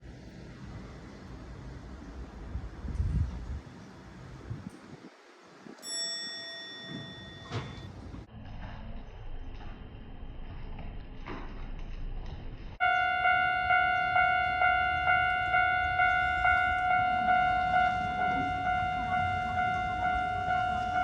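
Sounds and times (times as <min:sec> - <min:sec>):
level crossing warning bell: 0:05.8 - 0:08.3, 0:12.8 - 0:21.0.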